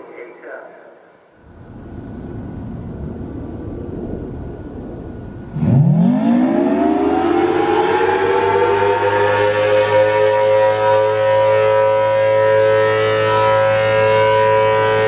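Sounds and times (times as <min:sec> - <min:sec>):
siren howl: 0:00.9 - 0:15.0
rushing rumble: 0:01.5 - 0:06.0.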